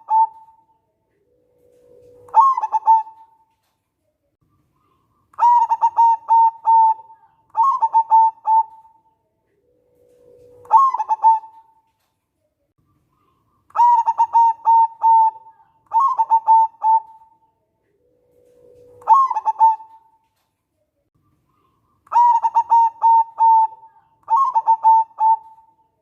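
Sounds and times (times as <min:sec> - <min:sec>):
dove cooing: 0:00.0 - 0:03.5, 0:04.8 - 0:11.8, 0:13.2 - 0:20.2, 0:21.6 - 0:25.8.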